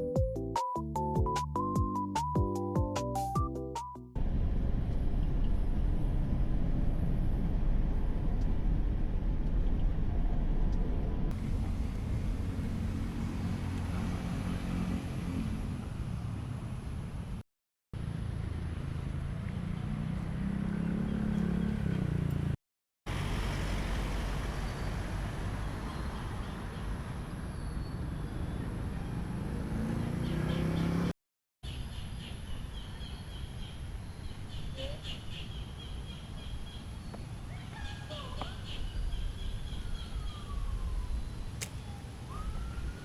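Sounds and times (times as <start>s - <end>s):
passing traffic rumble: 4.2s - 17.4s, 18.0s - 31.2s.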